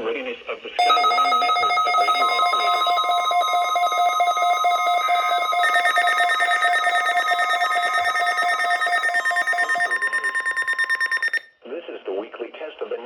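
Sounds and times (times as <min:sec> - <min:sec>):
steady loud electronic alarm tone: 0:00.8 - 0:11.4
trilling electronic beep: 0:00.8 - 0:11.5.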